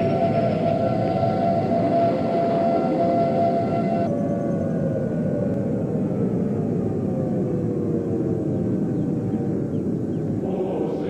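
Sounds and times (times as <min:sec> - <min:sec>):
held tones falling in pitch: 0:00.0 - 0:04.2
low rumbling drone: 0:00.0 - 0:11.0.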